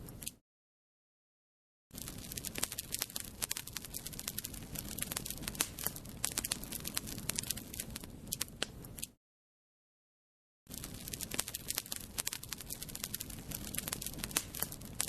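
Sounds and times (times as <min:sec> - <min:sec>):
fire crackling: 0:02.0 - 0:09.0, 0:10.7 - 0:15.0.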